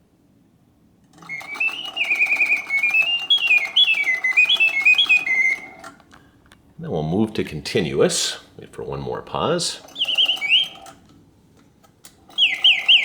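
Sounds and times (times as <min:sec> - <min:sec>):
clockwork mechanism clicking: 0:01.0 - 0:06.2, 0:08.8 - 0:13.0
mechanical bird whistling song: 0:01.2 - 0:06.1, 0:09.8 - 0:11.0, 0:12.2 - 0:13.0.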